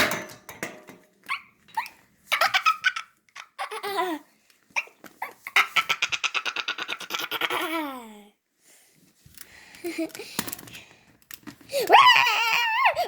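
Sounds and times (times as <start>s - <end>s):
dog-like yips and whines: 1.3s - 2.0s.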